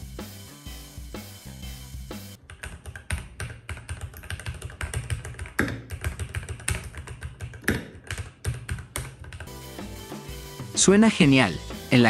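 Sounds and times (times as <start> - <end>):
mechanical keyboard typing: 2.4 - 9.5.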